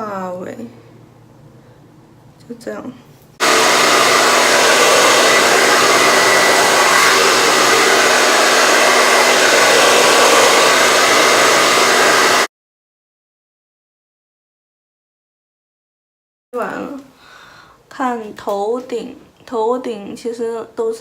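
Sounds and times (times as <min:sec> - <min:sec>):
hair dryer blowing air: 0:03.4 - 0:12.5.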